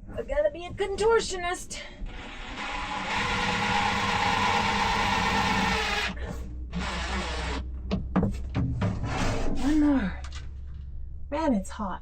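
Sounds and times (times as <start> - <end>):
cordless drill whirring: 2.1 - 7.6.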